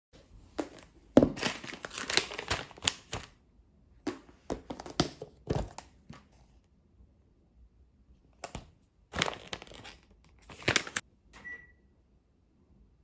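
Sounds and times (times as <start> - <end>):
plastic packaging crinkling: 0.6 - 3.4, 9.1 - 11.0.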